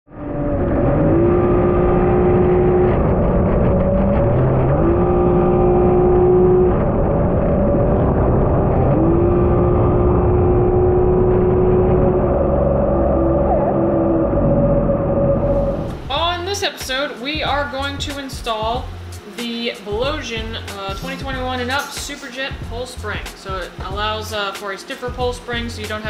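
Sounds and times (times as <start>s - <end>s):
jet ski engine revving: 0.2s - 16.1s
steady rush of noise: 0.2s - 26.0s.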